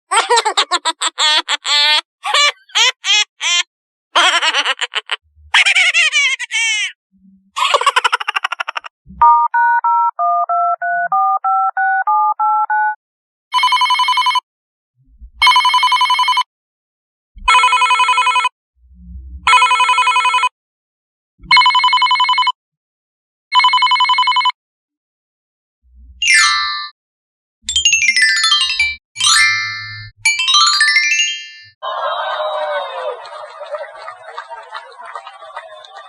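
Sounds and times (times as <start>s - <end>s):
telephone ringing: 13.6s - 14.4s.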